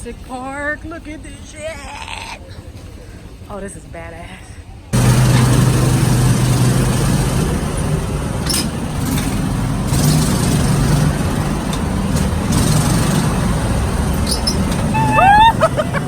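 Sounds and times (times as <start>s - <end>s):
engine hum shifting pitch: 5.0s - 16.0s.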